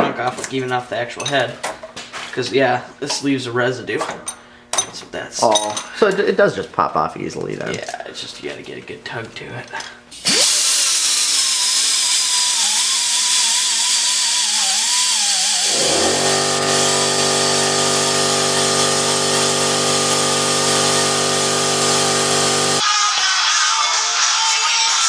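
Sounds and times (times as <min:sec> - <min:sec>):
power tool motor with loud hiss: 0:10.2 - 0:22.8.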